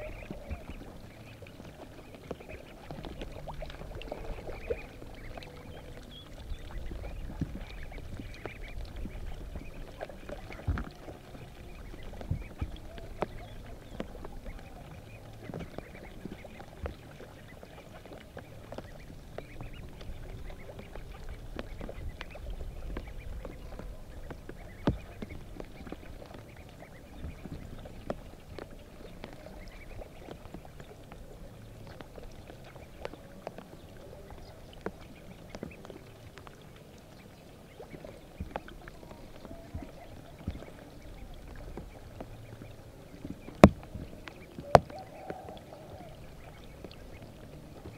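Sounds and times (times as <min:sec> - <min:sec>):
ducks calling softly: 0:00.0 - 0:47.9
water sloshing and splashing: 0:00.0 - 0:47.9.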